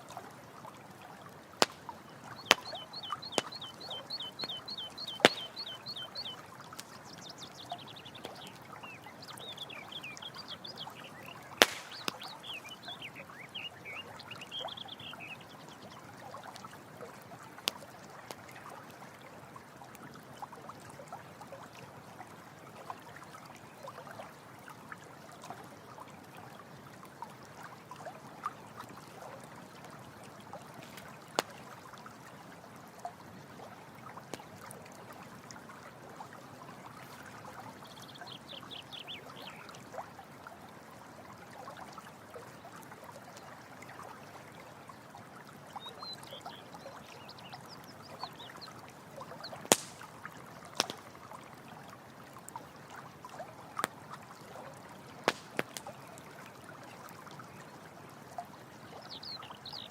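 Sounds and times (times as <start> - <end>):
water trickling over stones: 0.0 - 59.9
campfire popping: 1.6 - 7.2, 11.4 - 12.6, 49.6 - 51.0, 55.3 - 55.9
high chirping calls: 1.6 - 15.4.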